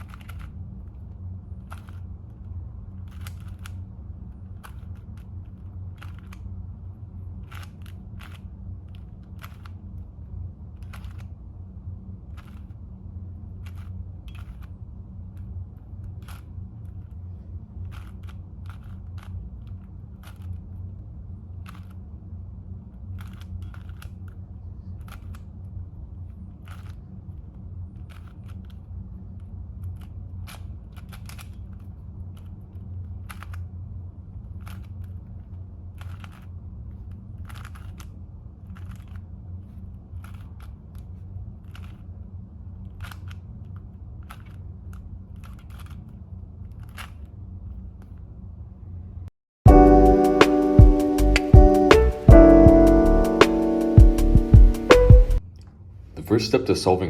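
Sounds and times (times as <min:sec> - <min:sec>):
puzzle cube clicking: 0:00.0 - 0:01.0, 0:01.6 - 0:06.6, 0:07.4 - 0:10.1, 0:10.8 - 0:11.3, 0:12.3 - 0:12.8, 0:13.6 - 0:14.8, 0:15.4 - 0:17.1, 0:17.8 - 0:20.8, 0:21.6 - 0:22.0, 0:23.1 - 0:24.4, 0:25.0 - 0:25.4, 0:29.8 - 0:33.6, 0:34.5 - 0:39.2, 0:40.2 - 0:42.1, 0:42.8 - 0:46.1, 0:46.7 - 0:47.3
steady low hum: 0:47.5 - 0:55.4.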